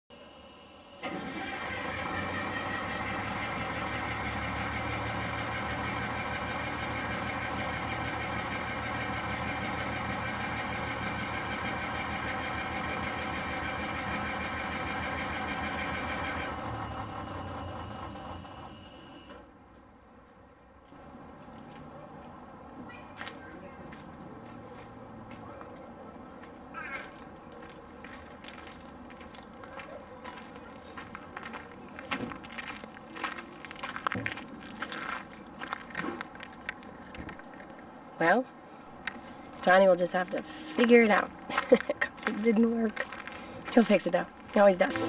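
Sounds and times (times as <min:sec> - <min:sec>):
bus engine running: 0:00.8 - 0:19.5, 0:39.1 - 0:43.7, 0:44.3 - 0:45.0.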